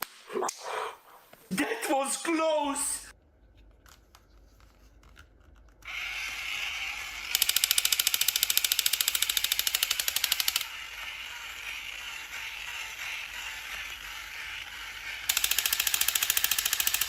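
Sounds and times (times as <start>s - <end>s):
steady whirring: 5.9s - 17.0s
rapid clicking rattle: 7.3s - 17.0s.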